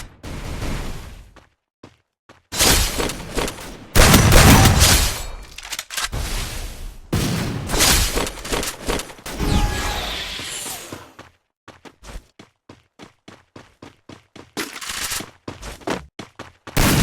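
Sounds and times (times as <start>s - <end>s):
video game gunfire: 2.6s - 5.4s, 16.8s - 17.0s.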